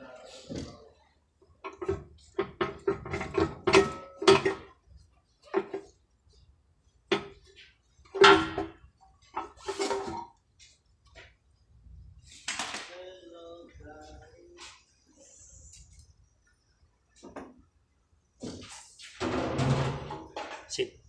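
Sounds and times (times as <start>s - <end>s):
metal clanking: 1.6s - 4.8s.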